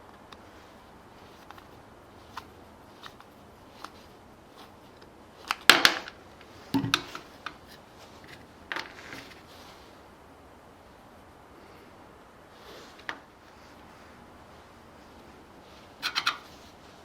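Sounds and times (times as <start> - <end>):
parts clattering on work surface: 5.6 - 9.4.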